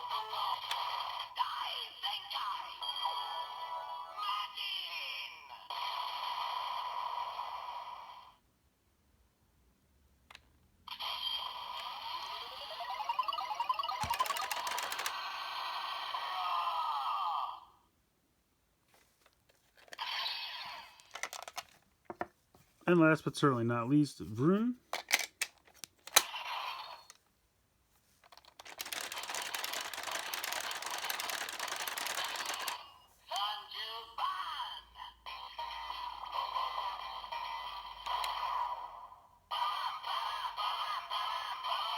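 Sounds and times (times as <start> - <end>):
electronic toy voice: 0.0 - 8.2, 10.9 - 17.7, 28.8 - 41.9
electronic toy sound effects: 10.9 - 17.3, 19.9 - 21.4, 28.6 - 33.6
rapid plastic clicking: 14.0 - 15.2, 28.2 - 32.8.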